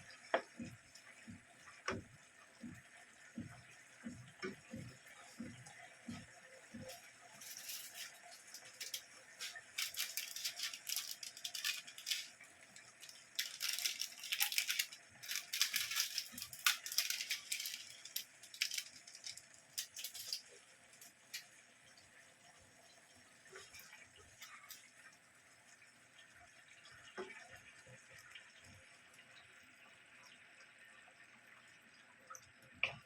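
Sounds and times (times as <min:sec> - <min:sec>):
utensils clattering and scraping: 0:06.8 - 0:21.4.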